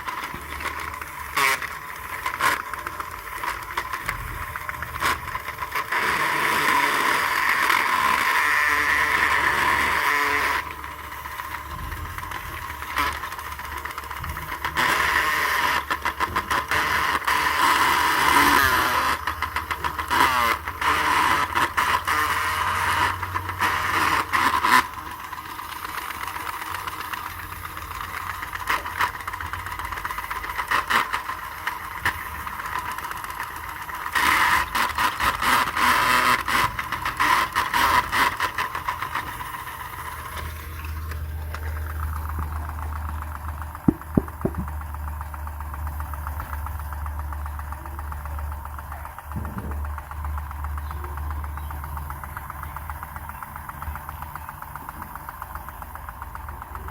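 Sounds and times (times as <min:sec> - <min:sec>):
small motor rattling: 0:00.0 - 0:56.9
steady low hum: 0:37.5 - 0:56.9.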